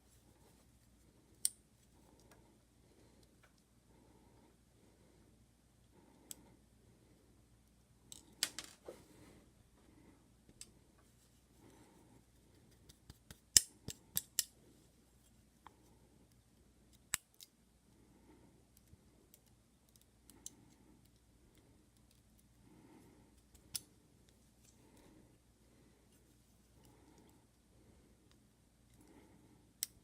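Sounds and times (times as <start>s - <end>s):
metallic clicks of lock parts: 13.5s - 14.5s.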